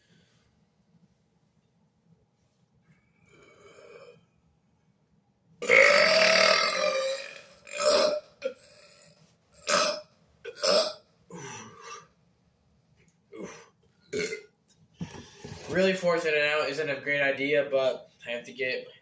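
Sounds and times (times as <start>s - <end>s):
boy burping: 5.6s - 12.1s, 13.3s - 14.5s.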